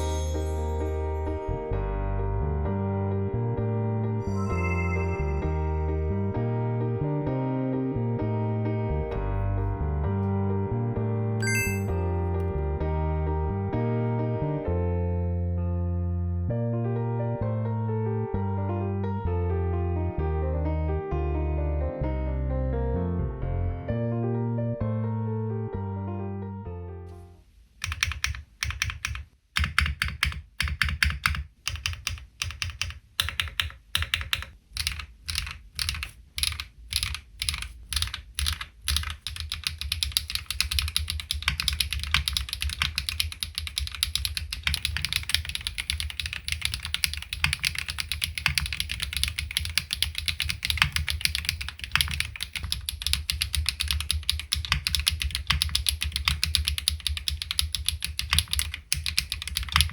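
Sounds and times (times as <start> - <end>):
mechanical keyboard typing: 27.8 - 59.9.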